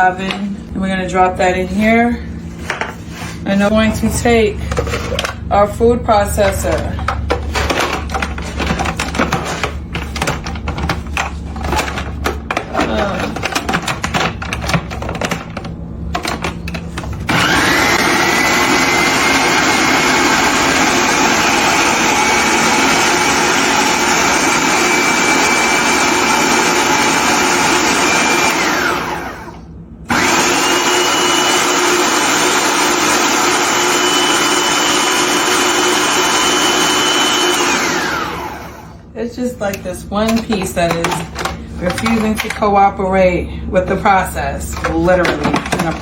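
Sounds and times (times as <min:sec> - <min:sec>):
food processor motor whining: 0:17.3 - 0:39.1.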